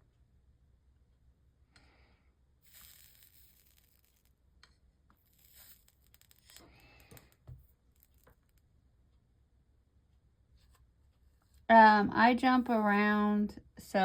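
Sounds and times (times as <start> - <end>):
soldering iron sizzling: 2.6 - 4.4, 5.1 - 8.6.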